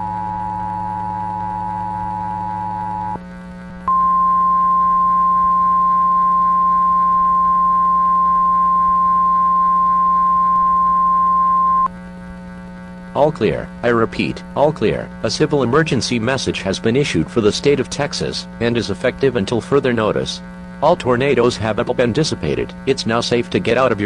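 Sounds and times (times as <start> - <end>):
two-tone attention signal: 0.0 - 3.2, 3.9 - 11.9
low steady hum: 0.0 - 24.0.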